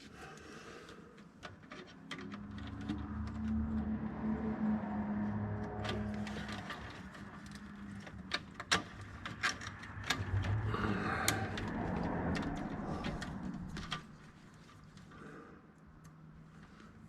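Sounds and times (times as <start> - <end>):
clicks and clatter of tools: 0.0 - 3.9, 5.6 - 15.2.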